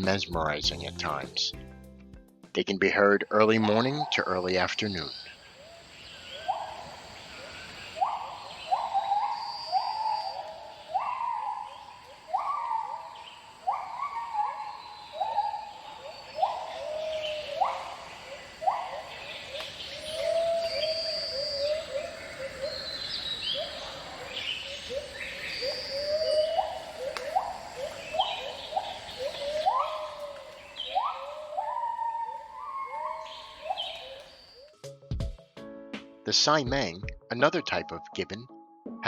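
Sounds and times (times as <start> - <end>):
gibbons whooping: 3.4 - 34.4.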